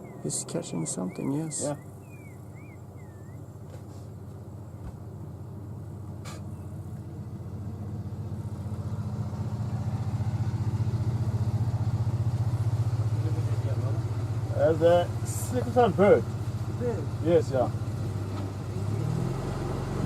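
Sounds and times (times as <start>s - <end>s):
bird chirps: 0.0s - 3.7s, 6.4s - 6.8s
vehicle engine humming: 0.0s - 20.0s.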